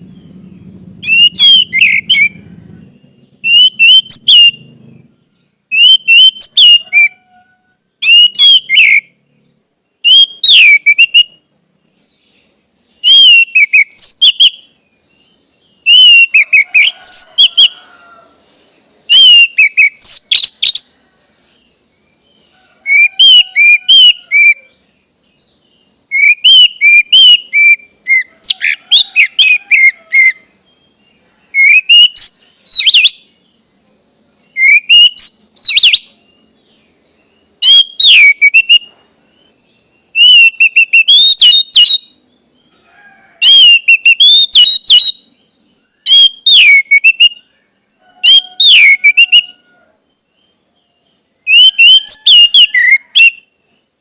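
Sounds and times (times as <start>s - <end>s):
thrush singing: 0.0s - 7.1s, 12.5s - 39.0s
steady high hiss: 0.0s - 52.3s, 53.0s - 54.0s.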